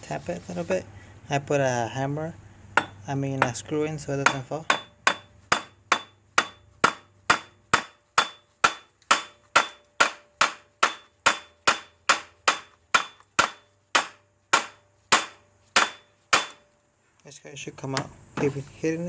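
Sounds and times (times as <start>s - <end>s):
hammer striking metal bolt: 4.3s - 16.6s.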